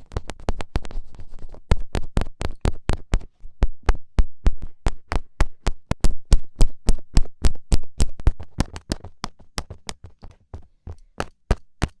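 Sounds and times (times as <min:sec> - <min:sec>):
rapid sharp taps: 0:00.0 - 0:12.0.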